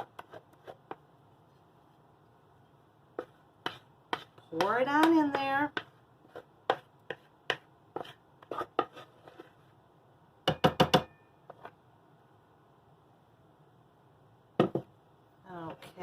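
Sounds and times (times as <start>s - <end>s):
wooden spoon scraping a bowl: 0.0s - 1.7s, 3.1s - 9.8s.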